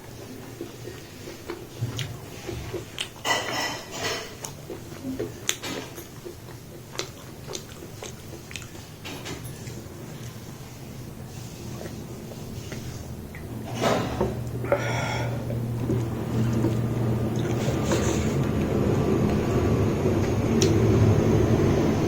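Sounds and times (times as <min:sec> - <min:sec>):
chewing: 0:00.0 - 0:19.6
utensil scraping a plate: 0:17.5 - 0:18.5.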